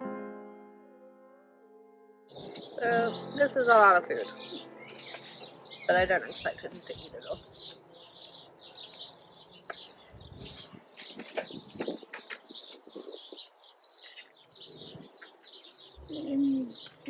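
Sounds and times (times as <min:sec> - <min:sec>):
small birds chirping: 0:02.3 - 0:17.0.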